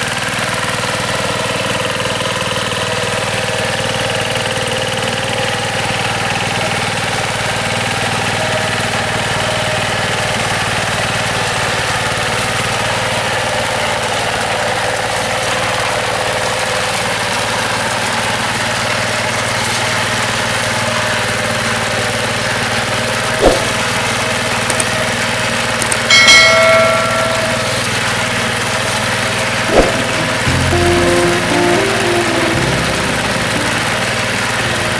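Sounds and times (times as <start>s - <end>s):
brief ringing tone: 26.2s - 28.0s
sharp knocks: 29.7s - 32.3s.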